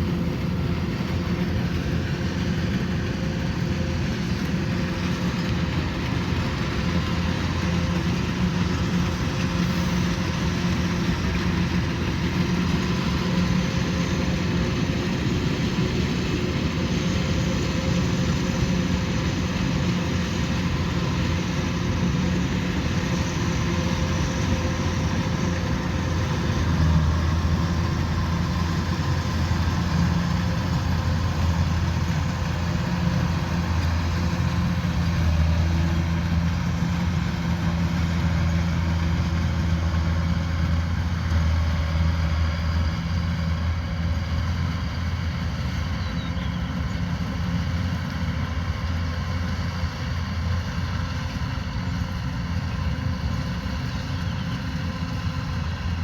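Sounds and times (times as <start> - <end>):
threshing machinery whirring: 0.0 - 39.9
diesel engine hum: 0.0 - 56.0.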